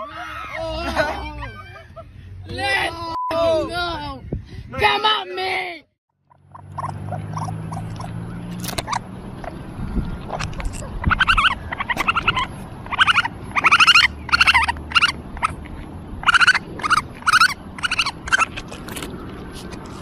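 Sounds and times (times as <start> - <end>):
animal shrill wavering calls: 10.3 - 15.6, 16.2 - 18.6.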